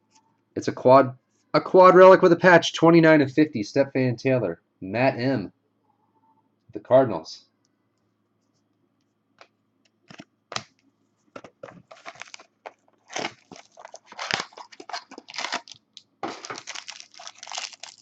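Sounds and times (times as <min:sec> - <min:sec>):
wrapper crinkling and tearing: 0:11.8 - 0:18.0.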